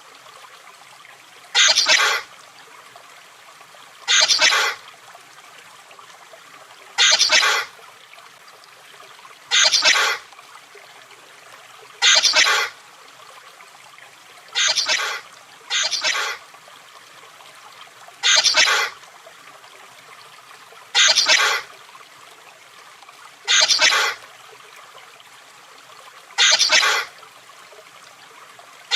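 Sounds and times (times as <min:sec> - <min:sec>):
chameleon call bursts: 0:01.6 - 0:02.2, 0:04.1 - 0:04.8, 0:07.0 - 0:07.7, 0:09.5 - 0:10.2, 0:12.0 - 0:12.7, 0:14.6 - 0:16.4, 0:18.2 - 0:19.0, 0:21.0 - 0:21.7, 0:23.5 - 0:24.2, 0:26.4 - 0:27.1.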